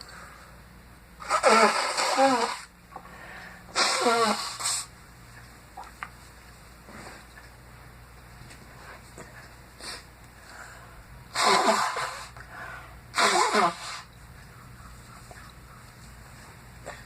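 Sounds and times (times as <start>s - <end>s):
person sneezing: 3.7s - 4.9s, 11.4s - 12.4s, 13.2s - 14.1s.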